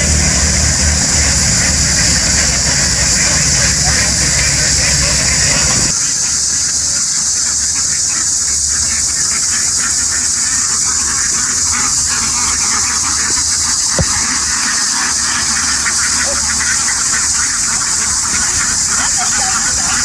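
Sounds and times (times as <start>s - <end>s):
low rumble: 0.0s - 5.9s
flock of ducks quacking: 0.0s - 20.0s
steady high hiss: 0.0s - 20.0s.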